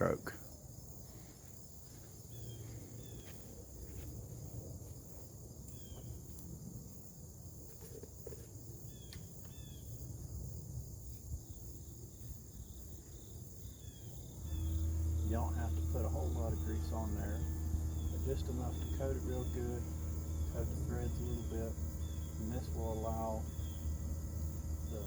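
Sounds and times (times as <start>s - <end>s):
insects chirring: 0.0s - 25.0s
low background rumble: 10.6s - 25.0s.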